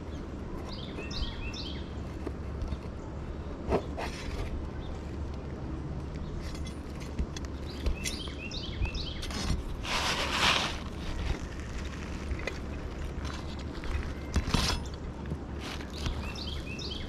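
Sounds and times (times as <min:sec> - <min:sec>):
birds chirping: 0:00.0 - 0:17.0
low outdoor rumble: 0:00.0 - 0:17.0
shingle tearing: 0:09.1 - 0:16.9.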